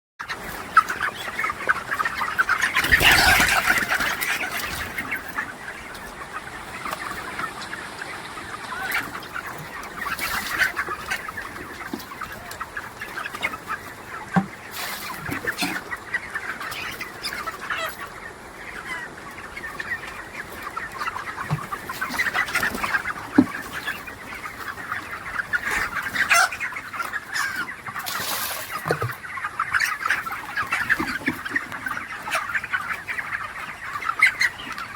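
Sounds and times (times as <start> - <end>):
chickens clucking: 0.2 - 34.9.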